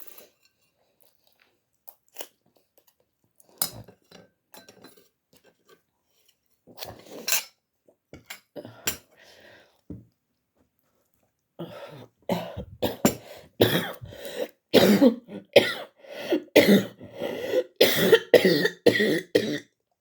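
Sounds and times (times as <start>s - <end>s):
cutlery clinking against a dish: 3.6s - 5.1s, 7.2s - 7.6s.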